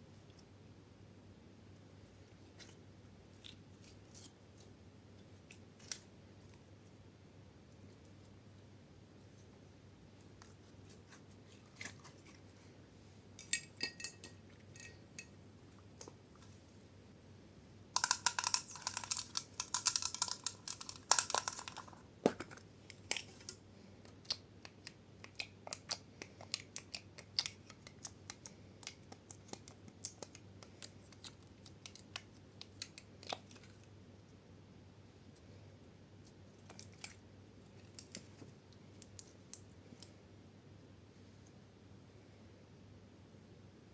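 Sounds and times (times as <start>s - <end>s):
slime clicking and crackling: 22.9s - 33.8s.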